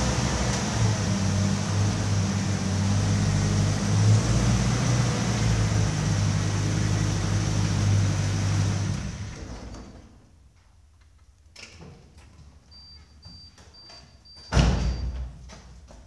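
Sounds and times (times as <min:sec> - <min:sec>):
car engine running: 0:00.0 - 0:09.4.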